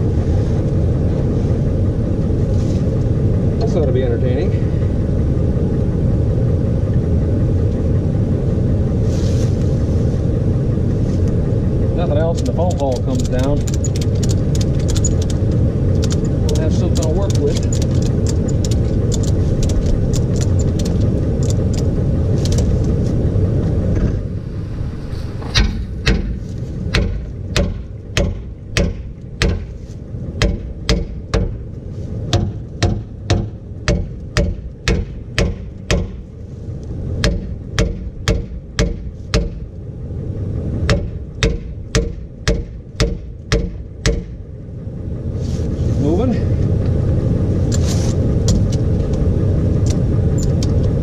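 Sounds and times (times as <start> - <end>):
low rumble: 0.0 - 51.0
hammer striking metal: 25.5 - 29.7, 30.4 - 31.6, 32.3 - 36.2, 37.2 - 39.6, 40.9 - 44.4.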